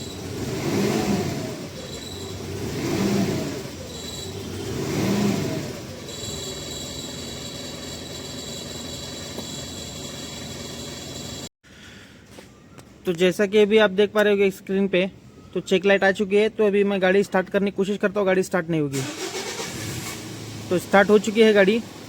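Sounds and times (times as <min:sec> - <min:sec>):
diesel engine revving and idling: 0:00.0 - 0:11.5, 0:19.0 - 0:22.0.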